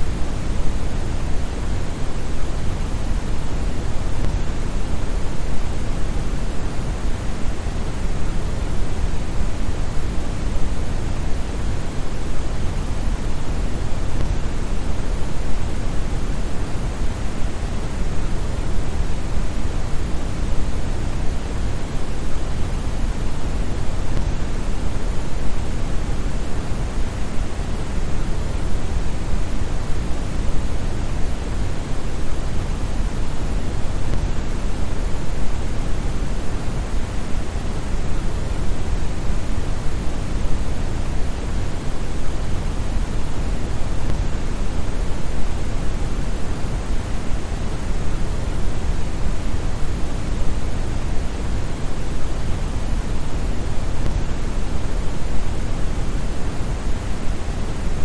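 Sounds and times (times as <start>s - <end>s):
brown noise hiss: 0.0s - 58.0s.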